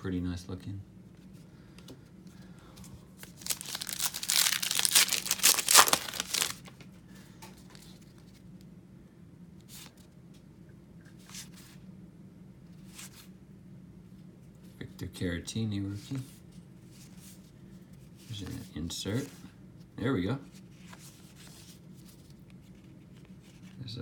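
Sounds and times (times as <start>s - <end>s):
wrapper tearing and crinkling: 3.2s - 6.8s.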